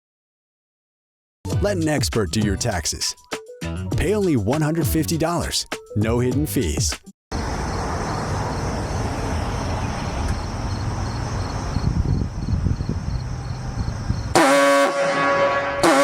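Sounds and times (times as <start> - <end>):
loud vehicle horn blast: 14.3 - 16.0.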